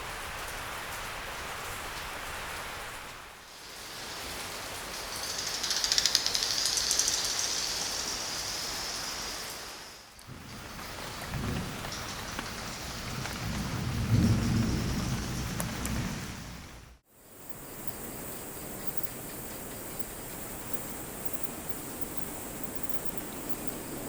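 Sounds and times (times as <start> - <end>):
rain hissing: 0.0 - 24.0
thunder rumbling: 10.3 - 17.0.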